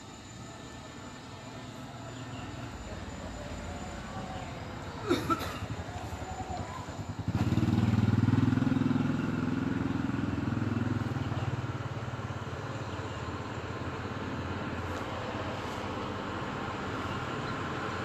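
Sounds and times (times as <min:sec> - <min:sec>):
low pulsing engine passing by: 0:00.0 - 0:18.0.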